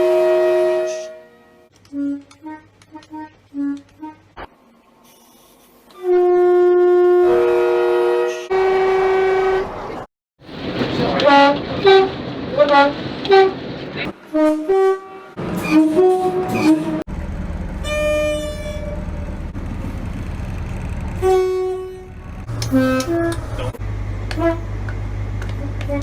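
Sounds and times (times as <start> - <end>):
train horn blasts: 0.0 - 4.3, 6.0 - 9.8, 10.5 - 17.0, 17.8 - 19.3, 21.1 - 23.6, 24.3 - 24.8.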